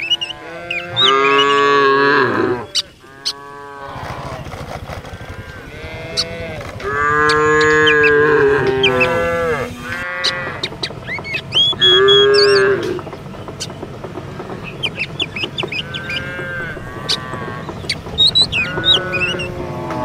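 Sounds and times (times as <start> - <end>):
high bird chirps: 0.0 - 1.8, 7.2 - 9.4, 10.2 - 13.9, 14.5 - 19.6
cattle mooing: 0.0 - 13.1, 14.3 - 20.0.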